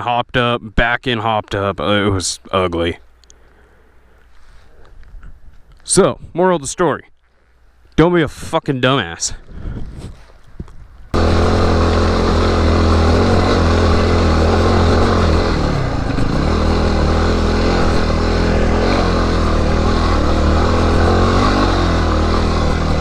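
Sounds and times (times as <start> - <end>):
dirt bike engine under load: 11.2 - 23.0.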